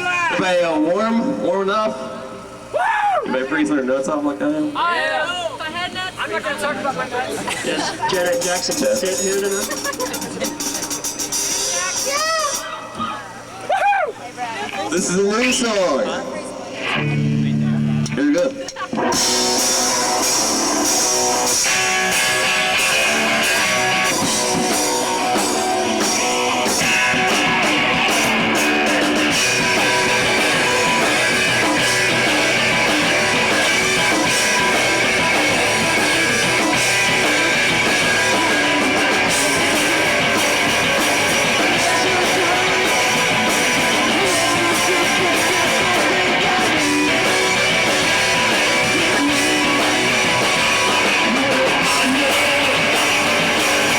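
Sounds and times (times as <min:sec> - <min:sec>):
distorted electric guitars: 0:00.0 - 0:13.6, 0:14.6 - 0:53.9
drum kit: 0:08.1 - 0:12.8, 0:18.0 - 0:53.9.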